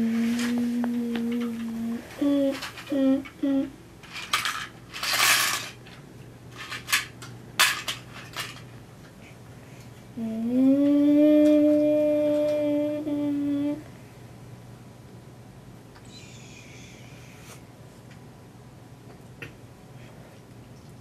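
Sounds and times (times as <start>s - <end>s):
child humming: 0.0s - 3.8s, 10.2s - 13.9s
toy pieces clattering: 4.0s - 6.0s, 6.6s - 8.7s.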